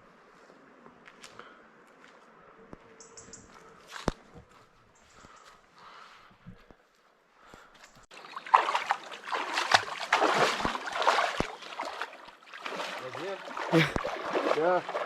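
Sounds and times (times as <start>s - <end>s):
water splashing: 8.1s - 15.0s.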